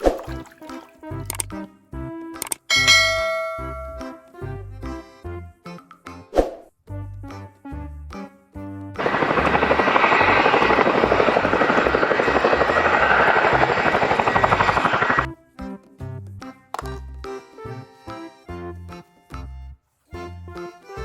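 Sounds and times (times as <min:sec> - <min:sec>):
children's background music: 0:00.0 - 0:03.0, 0:03.9 - 0:06.4, 0:15.3 - 0:21.0
fast-pulsing mechanical whirr: 0:09.0 - 0:15.3.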